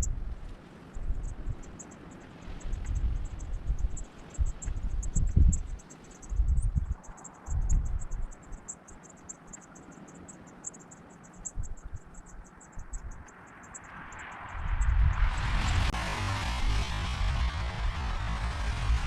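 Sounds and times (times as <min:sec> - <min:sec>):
wind buffeting microphone: 0:00.0 - 0:09.0, 0:11.4 - 0:19.0
rapid high-pitched ticking: 0:01.0 - 0:14.9
rising hiss: 0:15.0 - 0:19.0.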